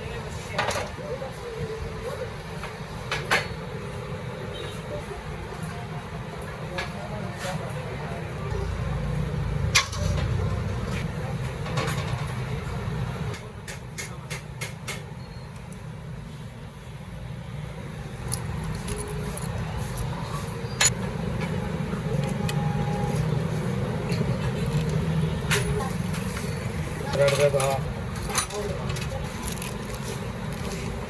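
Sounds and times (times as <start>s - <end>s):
metal tools clinking on engine parts: 18.2s - 21.0s, 24.0s - 31.0s.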